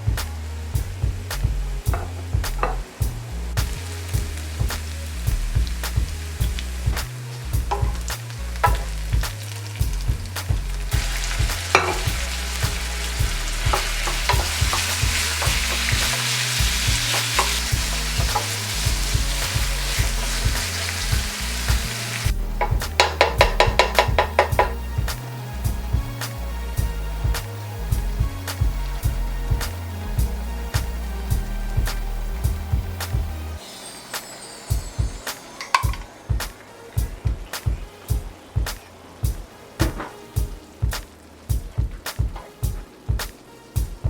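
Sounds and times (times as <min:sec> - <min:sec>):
food sizzling in a frying pan: 0:03.6 - 0:25.8.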